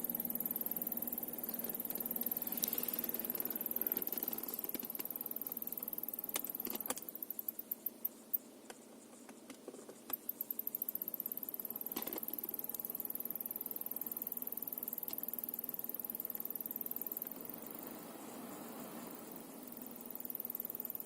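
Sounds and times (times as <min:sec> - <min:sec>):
blower fan motor squeaking: 0:00.0 - 0:05.6
fan motor clicks: 0:00.0 - 0:07.1.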